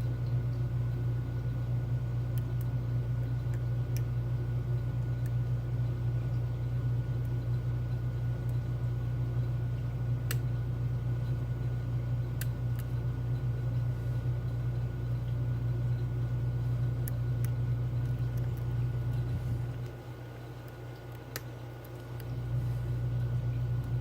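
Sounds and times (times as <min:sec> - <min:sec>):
low hum: 0:00.0 - 0:24.0.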